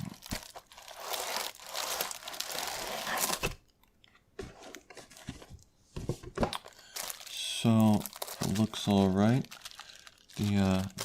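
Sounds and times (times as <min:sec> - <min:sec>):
plastic film and cardboard crinkling: 0:00.0 - 0:03.6, 0:06.4 - 0:11.0.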